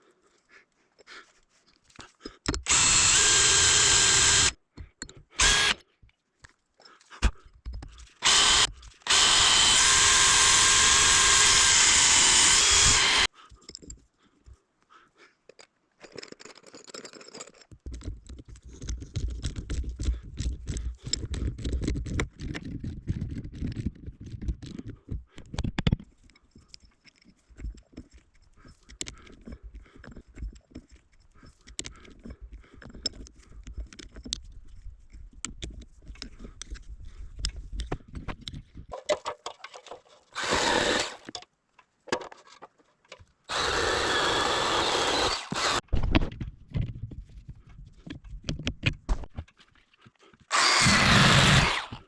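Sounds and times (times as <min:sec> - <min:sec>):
power drill running: 0:02.7 - 0:04.6, 0:05.4 - 0:05.8, 0:08.2 - 0:13.3, 0:40.4 - 0:41.3, 0:43.5 - 0:45.8, 0:50.5 - 0:52.0
handling clicks and knocks: 0:15.4 - 0:40.4.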